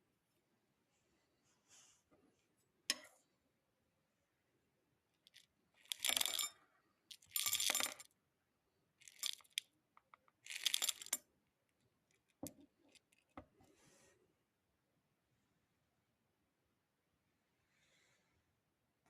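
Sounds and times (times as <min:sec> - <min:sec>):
pellets rattling in container: 0:05.8 - 0:06.4, 0:09.0 - 0:09.6, 0:10.4 - 0:11.2.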